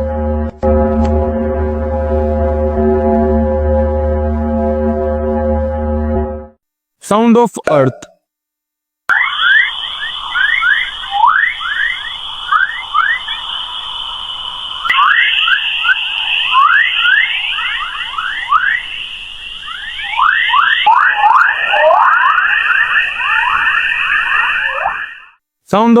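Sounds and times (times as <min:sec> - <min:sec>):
steady high tone: 0:09.1 - 0:25.4.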